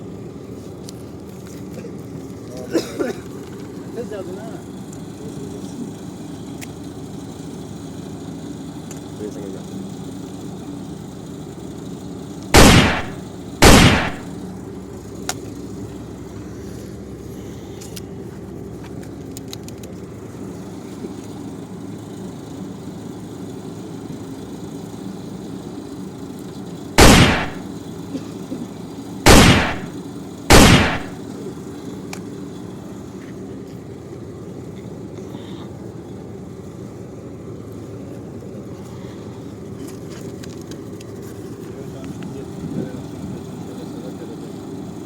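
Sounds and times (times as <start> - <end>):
steady mechanical hum: 0.0 - 45.0
toy gun shots: 12.6 - 14.3, 27.0 - 27.6, 29.3 - 31.2.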